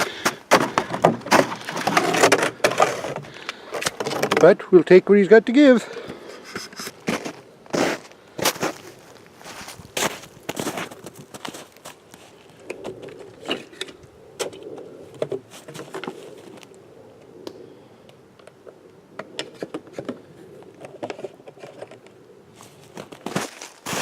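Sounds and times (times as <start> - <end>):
footsteps crunching on icy snow: 6.4 - 12.6, 22.6 - 24.0.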